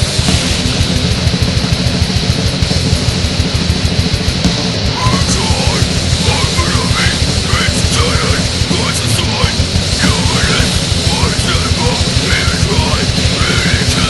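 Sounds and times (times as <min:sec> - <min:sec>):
extreme metal music: 0:00.0 - 0:14.0.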